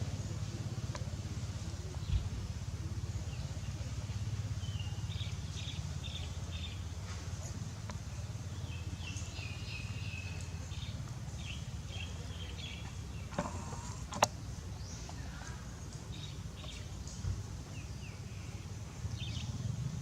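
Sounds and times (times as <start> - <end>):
sharp clicks: 13.3 - 14.4.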